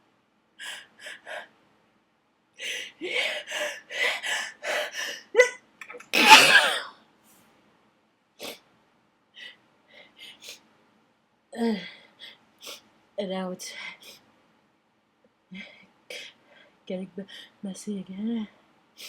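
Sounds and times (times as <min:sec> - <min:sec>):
person sneezing: 0:06.2 - 0:06.9.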